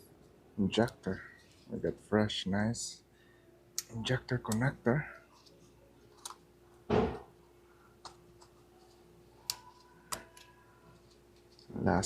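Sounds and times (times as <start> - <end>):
plastic connectors clicking: 8.0 - 11.7.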